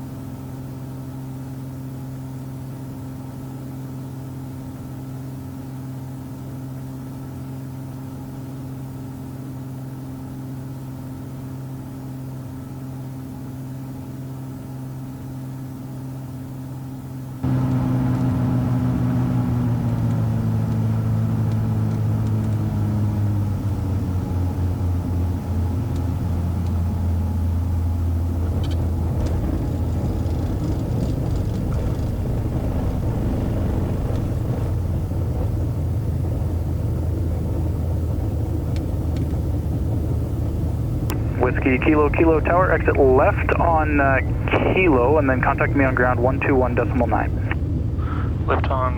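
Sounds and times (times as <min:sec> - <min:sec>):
piston aircraft engines droning: 0:00.0 - 0:48.9
broad low rumble: 0:25.0 - 0:48.9.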